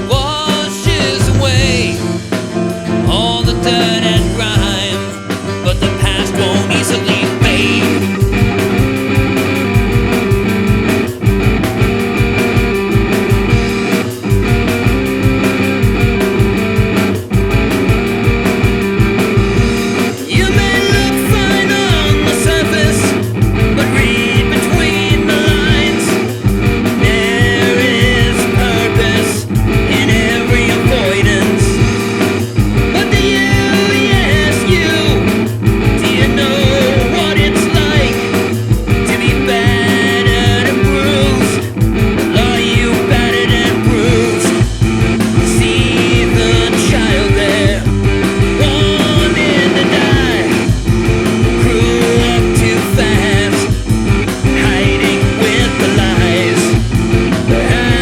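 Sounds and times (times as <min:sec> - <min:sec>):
rock band playing riff: 0:00.0 - 0:58.0
wavering lead guitar melody: 0:00.0 - 0:58.0.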